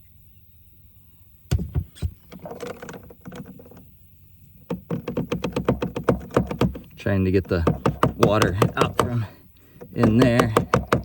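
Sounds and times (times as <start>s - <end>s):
plastic parts knocking: 1.5s - 3.9s, 4.6s - 11.0s
water sloshing: 4.5s - 11.0s.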